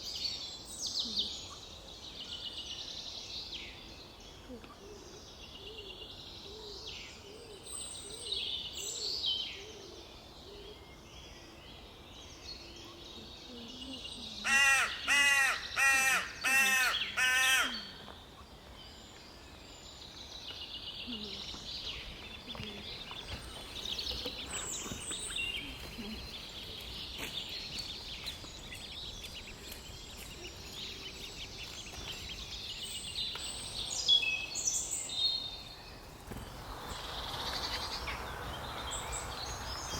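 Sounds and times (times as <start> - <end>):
woodland birds singing: 0.0 - 39.9
loud bird calls: 14.2 - 18.5, 21.0 - 39.9.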